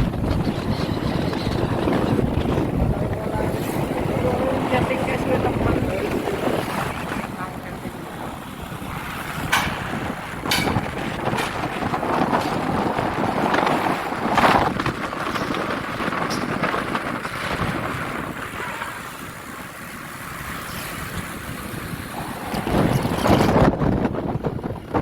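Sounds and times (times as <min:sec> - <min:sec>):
outdoor rumbling: 0:00.0 - 0:25.0
wind buffeting microphone: 0:00.0 - 0:25.0
sharp knocks: 0:09.4 - 0:13.1.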